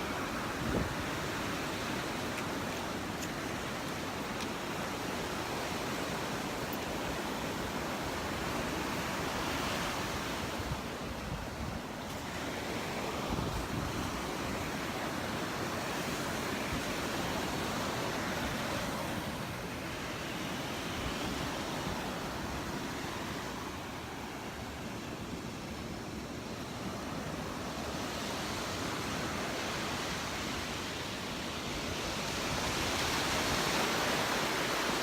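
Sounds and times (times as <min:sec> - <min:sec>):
wind buffeting microphone: 0:00.4 - 0:02.1.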